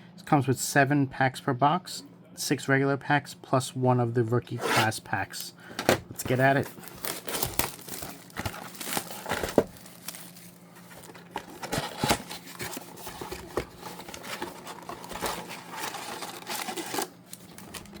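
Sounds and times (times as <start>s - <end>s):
packaging crinkling and tearing: 6.2s - 18.0s.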